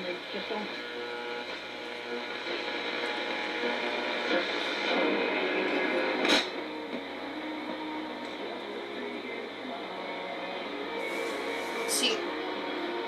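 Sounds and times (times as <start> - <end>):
faint radio talk: 0.0 - 1.1, 8.3 - 12.4
sharp radio crackle: 0.0 - 12.8
radio static hiss: 0.0 - 13.0.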